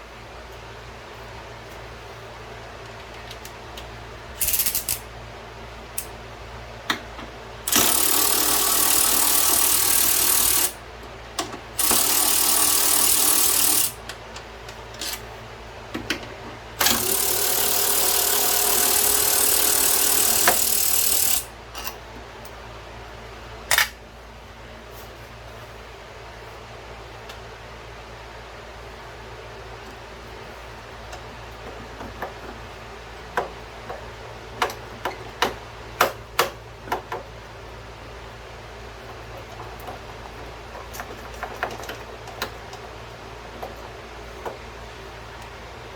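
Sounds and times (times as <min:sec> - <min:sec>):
power tool running in bursts: 0:07.7 - 0:10.8, 0:11.8 - 0:14.0, 0:16.8 - 0:21.5.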